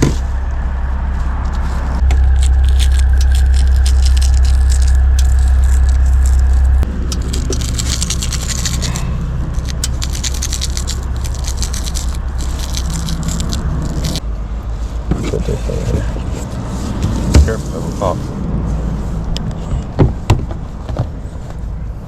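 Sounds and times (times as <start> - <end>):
meat crackling and scraping: 2.0 - 14.2.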